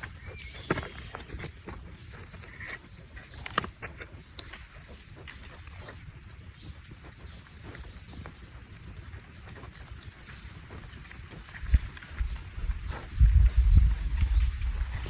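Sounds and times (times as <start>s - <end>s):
pigs feeding: 0.0s - 15.0s
low rumble: 11.6s - 15.0s.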